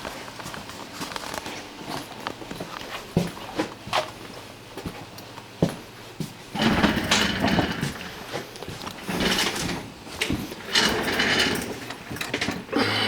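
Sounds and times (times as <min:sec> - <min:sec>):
toolbox drawers sliding and rattling: 0:06.6 - 0:12.6.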